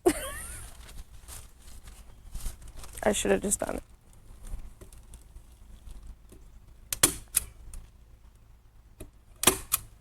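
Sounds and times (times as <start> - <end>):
staple gun firing: 9.4 - 9.9.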